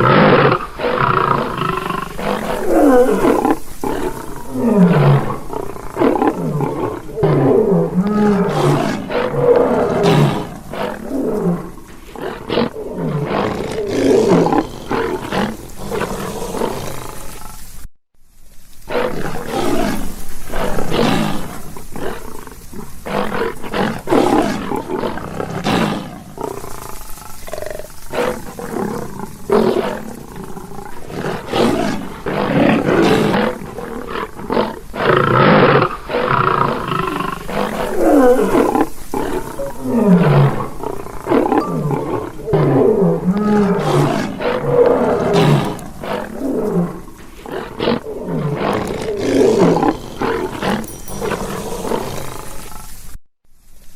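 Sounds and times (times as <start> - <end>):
lion roaring: 0.0 - 17.6, 18.9 - 52.9
lion grunting: 39.3 - 52.9.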